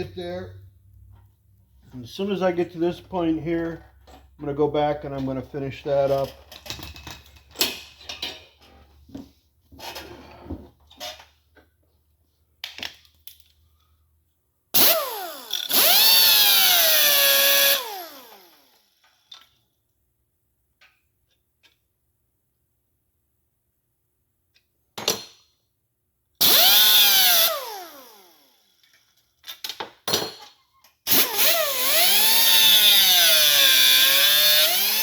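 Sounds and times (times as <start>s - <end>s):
power drill drilling metal: 14.8s - 18.8s, 26.4s - 28.6s, 31.1s - 35.0s.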